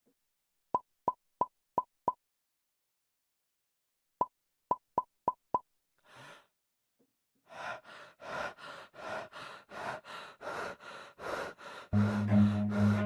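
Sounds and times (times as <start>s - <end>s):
heavy rapid panting: 7.6s - 13.0s.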